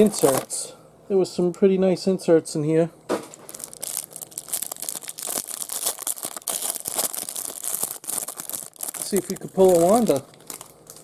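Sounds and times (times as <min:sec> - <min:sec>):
card packaging tearing and crinkling: 0:00.0 - 0:00.5, 0:03.2 - 0:11.0.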